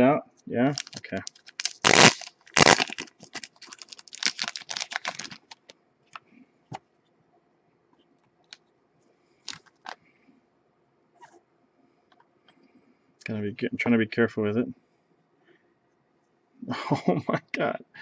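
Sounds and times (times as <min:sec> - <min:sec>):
card rustling: 0:00.8 - 0:05.7.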